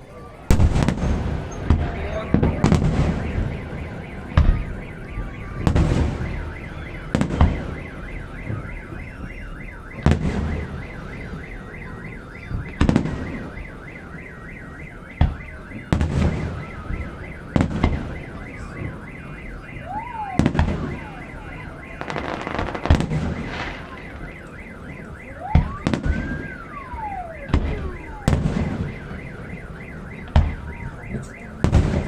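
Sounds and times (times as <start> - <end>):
car alarm warbling: 0.0 - 32.0
fireworks booming: 0.0 - 32.0.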